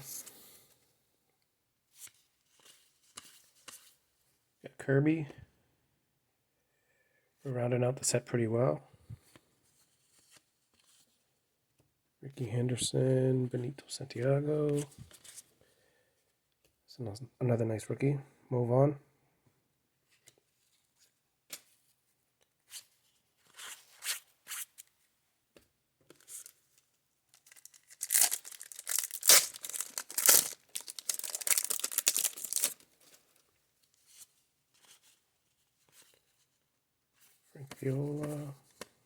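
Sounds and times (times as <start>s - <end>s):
wrapper tearing and crinkling: 27.3s - 32.8s.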